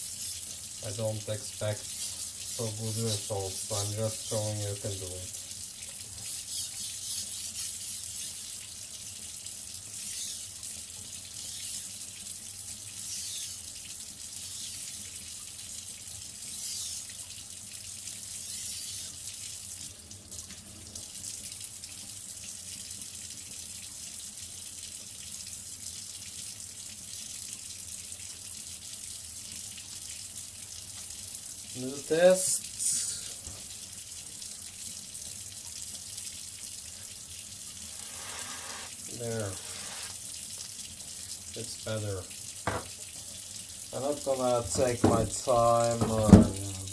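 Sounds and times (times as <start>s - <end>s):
knife scraping on whetstone: 1.8s - 3.8s, 6.2s - 8.6s, 10.0s - 10.5s, 13.1s - 13.6s, 14.4s - 15.0s, 16.5s - 17.1s, 18.4s - 19.1s, 37.9s - 40.2s.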